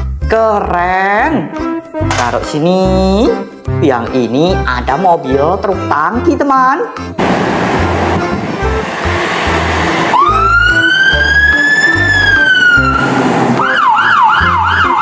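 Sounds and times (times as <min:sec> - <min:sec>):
background music beat: 0:00.0 - 0:15.0
siren wailing and yelping: 0:10.0 - 0:15.0.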